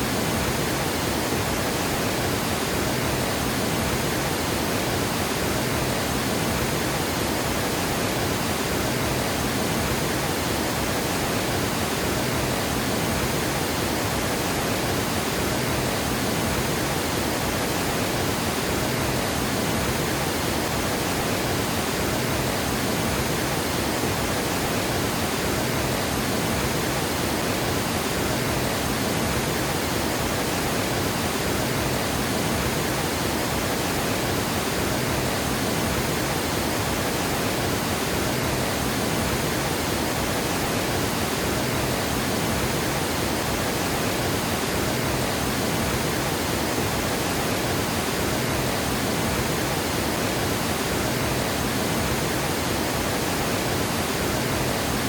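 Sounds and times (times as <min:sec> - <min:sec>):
water rushing over a dam: 0:00.0 - 0:55.0.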